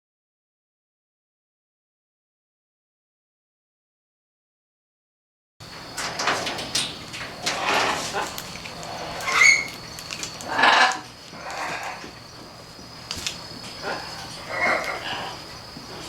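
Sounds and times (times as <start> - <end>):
parrots rasping calls: 7.4 - 12.2, 13.8 - 16.0
parrot squeak: 9.2 - 9.7.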